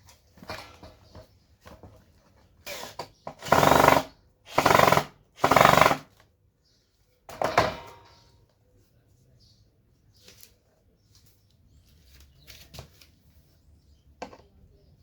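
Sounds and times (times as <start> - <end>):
handheld power tool bursts: 2.6 - 6.2.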